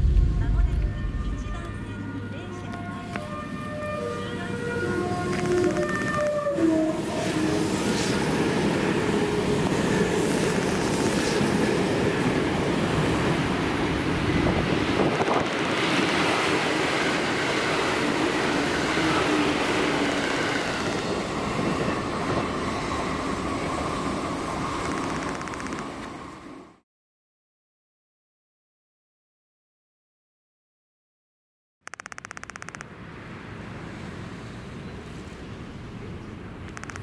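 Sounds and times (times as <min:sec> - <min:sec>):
train wheels rumbling on rails: 0:00.0 - 0:02.9, 0:07.1 - 0:26.7.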